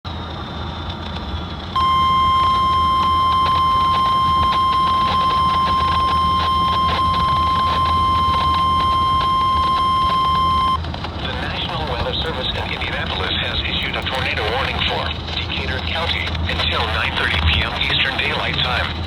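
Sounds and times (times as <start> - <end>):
loud high warning tone: 1.8 - 10.8
receiver hiss: 1.8 - 19.0.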